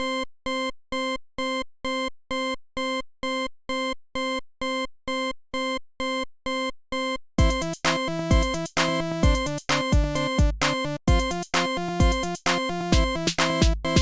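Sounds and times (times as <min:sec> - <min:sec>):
alarm clock beeping: 0:07.0 - 0:14.0.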